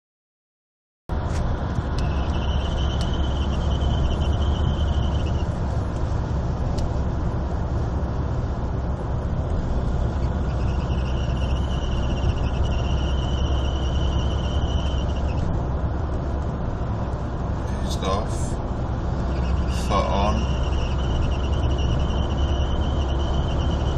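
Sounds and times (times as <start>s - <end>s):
diesel engine running: 1.1s - 23.9s
high-pitched chirp tone: 2.0s - 5.6s, 10.1s - 15.5s, 19.3s - 23.9s.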